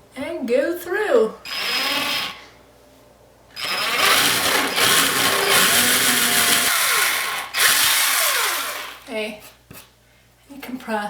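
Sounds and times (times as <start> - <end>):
electric drill boring drywall: 1.5 - 2.5, 3.6 - 9.1.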